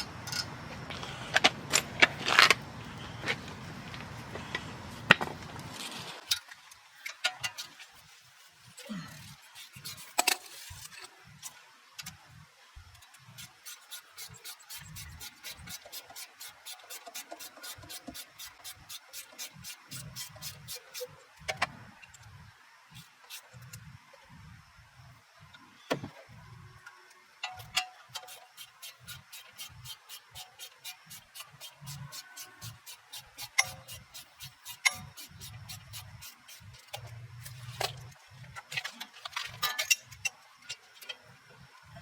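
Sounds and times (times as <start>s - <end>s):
ratchet wrench clicking: 27.4s - 37.9s
metal tools clanking: 38.6s - 41.2s.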